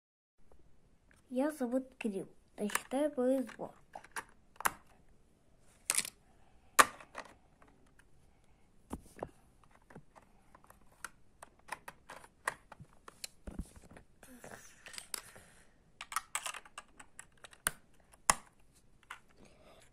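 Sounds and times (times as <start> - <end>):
clicks of small hard parts: 2.6 - 5.0, 5.9 - 6.2, 16.0 - 19.3.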